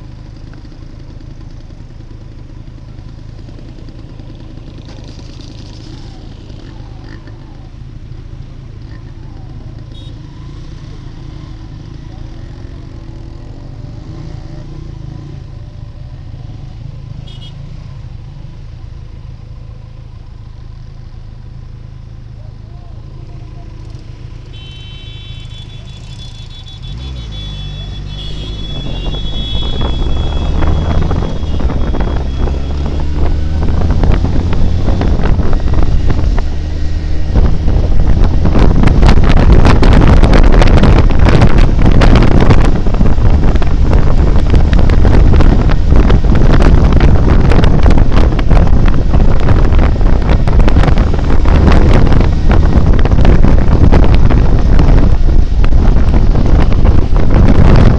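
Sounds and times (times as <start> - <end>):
motorcycle engine accelerating: 0.0 - 7.9, 22.9 - 57.9
wind buffeting on microphone: 28.2 - 57.9.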